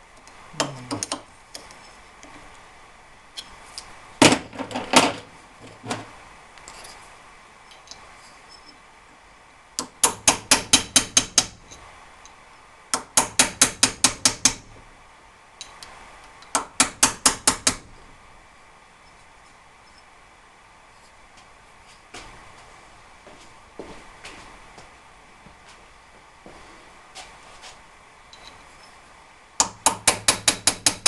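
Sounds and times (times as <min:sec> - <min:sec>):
hammer tapping on metal: 0:09.8 - 0:11.6, 0:12.9 - 0:14.7, 0:16.4 - 0:17.8, 0:29.6 - 0:31.0.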